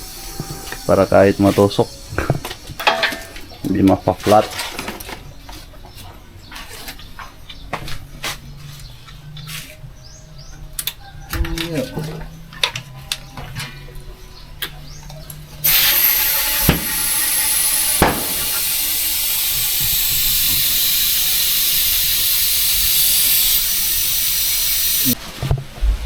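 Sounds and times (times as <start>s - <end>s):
compressed air hissing: 0.0s - 3.1s, 15.6s - 25.2s.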